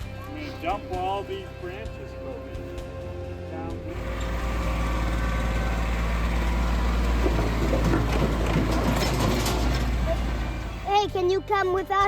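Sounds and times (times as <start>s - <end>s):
rattling noise: 3.9s - 10.9s
vehicle engine idling: 3.9s - 10.9s.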